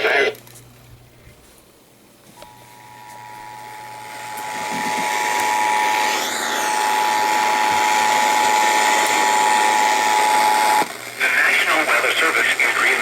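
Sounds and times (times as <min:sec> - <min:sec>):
radio static: 0:00.0 - 0:00.4, 0:07.0 - 0:13.0.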